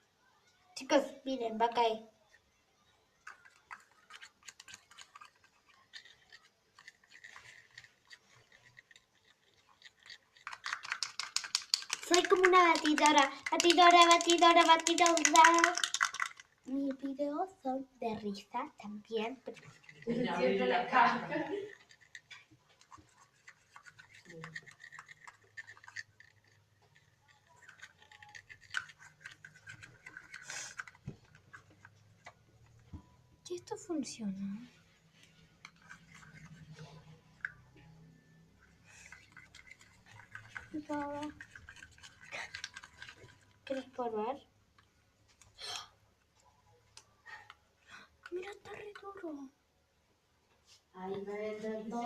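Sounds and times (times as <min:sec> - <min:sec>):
slime being stirred: 0:03.1 - 0:17.3, 0:18.2 - 0:20.4, 0:21.5 - 0:33.8, 0:34.7 - 0:45.6.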